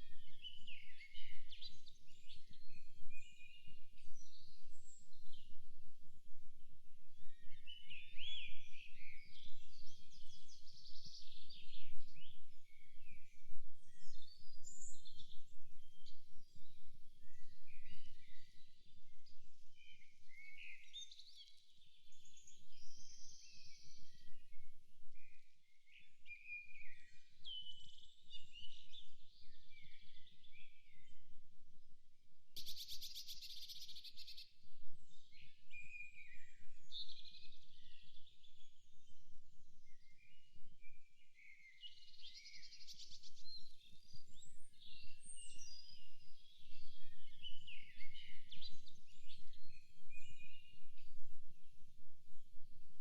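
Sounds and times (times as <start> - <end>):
songbirds chirping and singing: 32.6 - 51.1.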